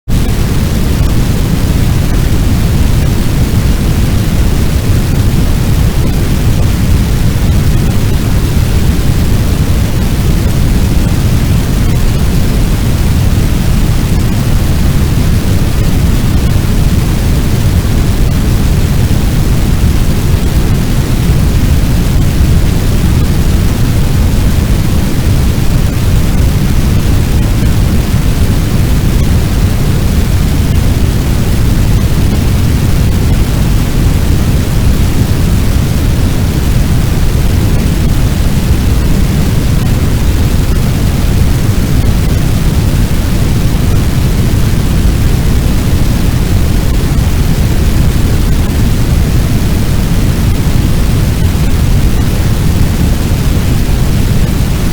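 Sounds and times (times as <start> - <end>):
large fire rumbling: 0.1 - 54.9.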